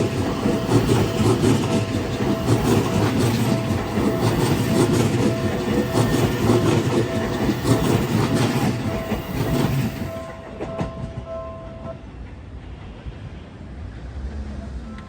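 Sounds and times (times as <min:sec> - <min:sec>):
train wheels clattering over rail joints: 0:00.0 - 0:11.3
level crossing bell ringing: 0:00.0 - 0:11.8.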